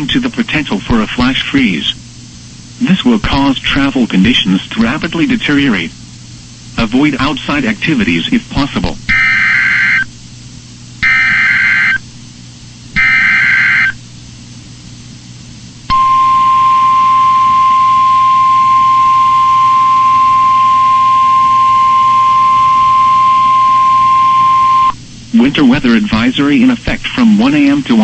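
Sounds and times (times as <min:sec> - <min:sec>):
radio hiss: 0:00.0 - 0:06.0
steady warning alarm tone: 0:09.1 - 0:10.1, 0:11.0 - 0:12.0, 0:13.0 - 0:14.0, 0:15.9 - 0:25.0
buzzy warbling data tones: 0:11.0 - 0:12.0, 0:13.0 - 0:14.0.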